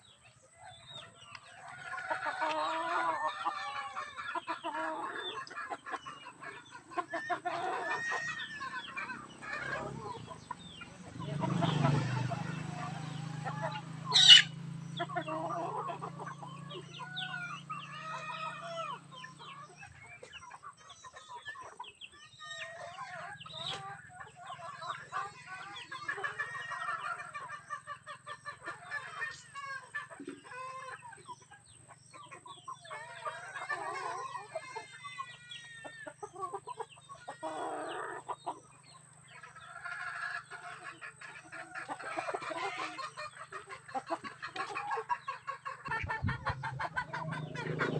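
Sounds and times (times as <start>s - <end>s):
chickens clucking: 0.0s - 47.9s
sharp high chicken squawk: 14.1s - 14.6s
low steady hum: 45.9s - 47.9s.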